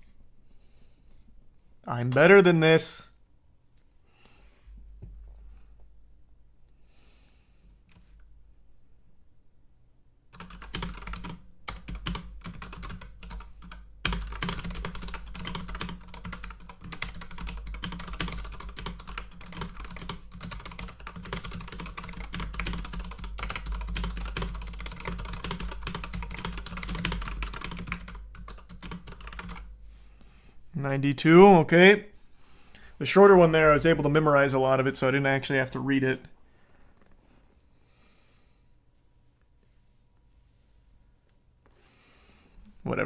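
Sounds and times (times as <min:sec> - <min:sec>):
fast typing on a keyboard: 0:10.4 - 0:29.7.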